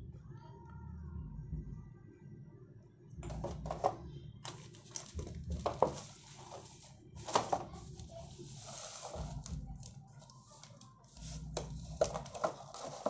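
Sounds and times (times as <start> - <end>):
cables and packaging rustling: 3.2 - 13.0.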